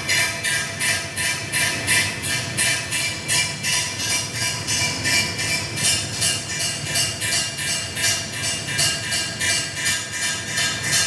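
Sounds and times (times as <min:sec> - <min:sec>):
rhythmic jingly rattling: 0:00.0 - 0:11.0.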